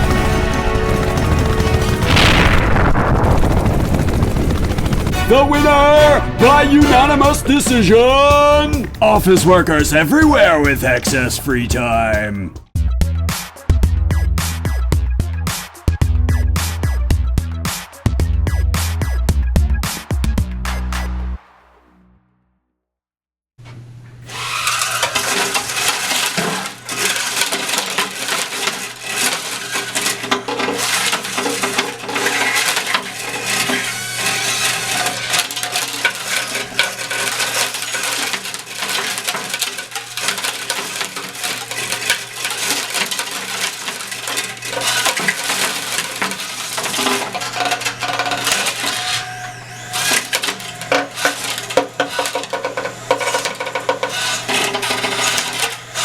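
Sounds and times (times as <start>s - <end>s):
rattling and clicking: 0.0s - 2.4s, 25.0s - 49.3s, 49.9s - 56.0s
small electric rotors humming: 24.2s - 56.0s.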